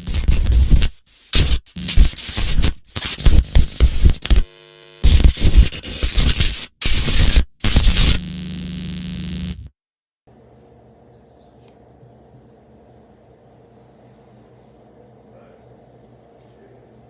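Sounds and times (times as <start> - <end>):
harsh distorted static bursts: 0.0 - 9.7
steady hum: 10.3 - 17.0.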